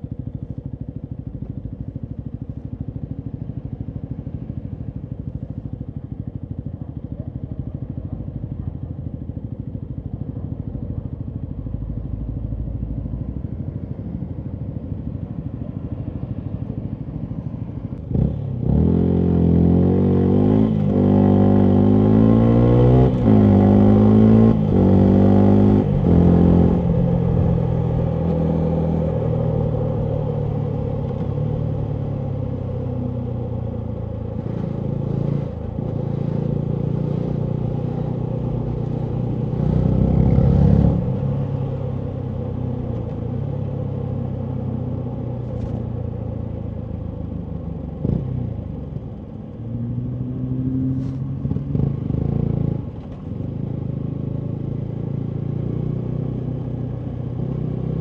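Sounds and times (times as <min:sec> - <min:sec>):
motorcycle engine revving: 0:17.9 - 0:58.0.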